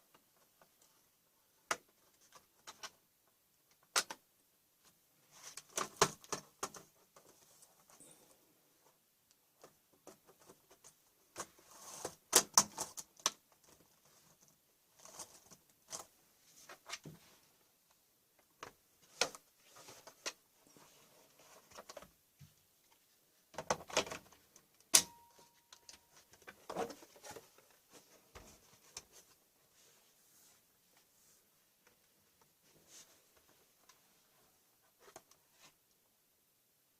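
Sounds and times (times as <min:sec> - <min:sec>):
laptop plastic clicks and rattles: 0:23.5 - 0:27.4.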